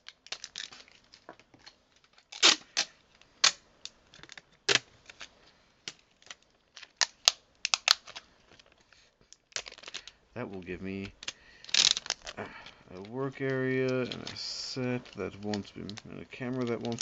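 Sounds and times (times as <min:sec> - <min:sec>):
adhesive tape ripping: 0:02.2 - 0:03.6, 0:05.9 - 0:08.2, 0:09.4 - 0:17.0.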